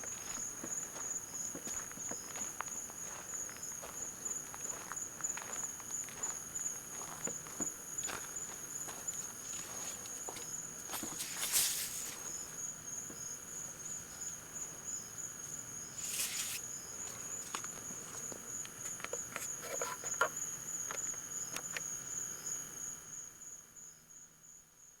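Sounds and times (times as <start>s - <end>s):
crickets trilling: 0.0s - 24.6s
rustles: 9.6s - 12.4s, 16.0s - 16.6s.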